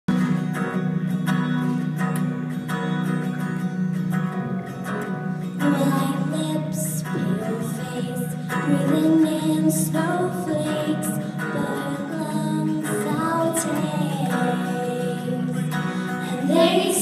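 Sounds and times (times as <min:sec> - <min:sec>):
acoustic guitar chords: 0:00.1 - 0:17.0
young women singing: 0:05.6 - 0:17.0.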